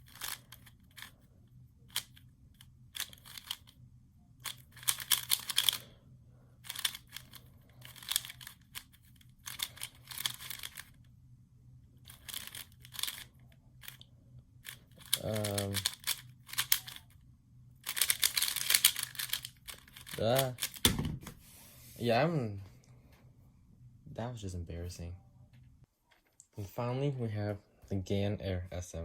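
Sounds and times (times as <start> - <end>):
puzzle cube clicking turns: 0.0 - 1.1, 1.9 - 3.8, 4.4 - 5.9, 6.6 - 11.0, 12.1 - 14.0, 14.6 - 17.2, 17.8 - 20.9.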